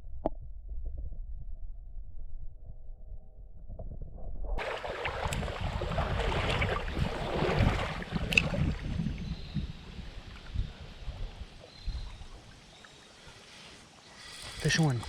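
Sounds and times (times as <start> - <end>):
wind rumble on microphone: 0.0 - 12.6
creek water rushing: 4.6 - 8.8
sharp clicks: 14.1 - 15.0.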